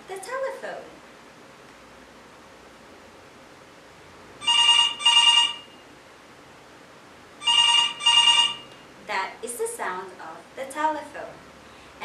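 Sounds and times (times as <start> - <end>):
telephone double ring: 4.4 - 5.8, 7.4 - 8.7.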